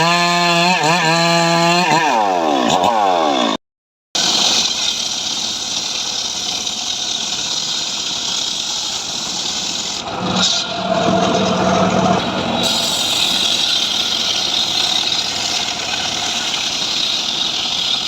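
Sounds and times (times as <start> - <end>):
engine running with hissy sound: 4.2 - 18.0.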